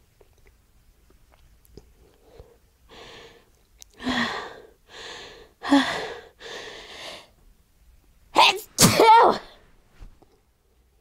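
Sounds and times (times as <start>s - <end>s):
woman gasping breaths: 2.2s - 7.4s
woman sneezing: 8.8s - 9.5s.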